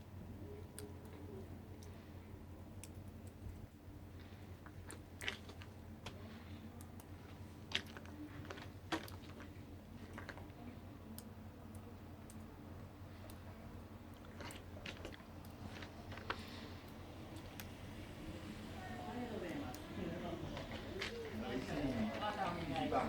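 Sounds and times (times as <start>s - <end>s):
chewing and crunching ice: 4.1s - 10.8s, 13.2s - 17.7s
steady low hum: 9.6s - 23.0s.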